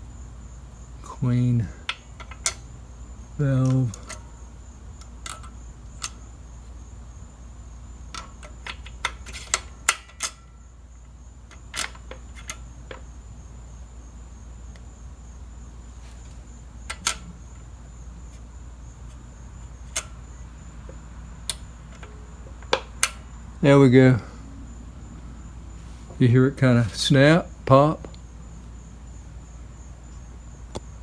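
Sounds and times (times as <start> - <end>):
steady low hum: 0.0 - 31.0
sharp metallic clicks and clinks: 1.8 - 2.7, 3.6 - 4.3, 5.0 - 6.2, 8.1 - 10.6.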